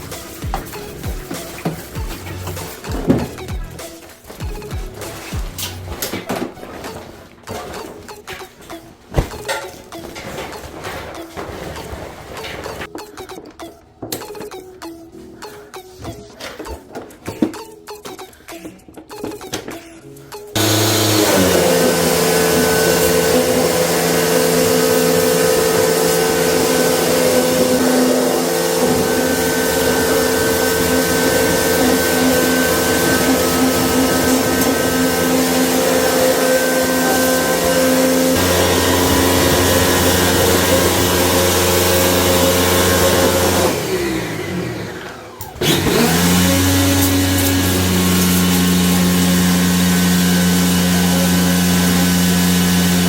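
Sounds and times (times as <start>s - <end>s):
electric motor machine humming: 20.6s - 53.0s.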